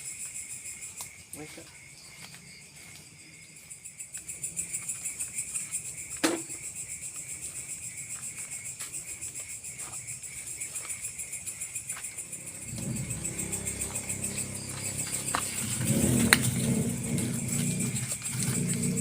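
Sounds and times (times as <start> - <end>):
insect drone: 0.0 - 19.0
shrill pulsing insect chirr: 0.0 - 19.0.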